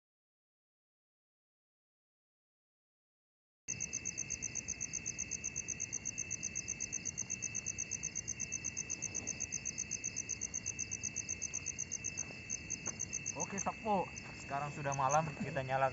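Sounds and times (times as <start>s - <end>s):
crickets chirping: 3.7s - 15.9s.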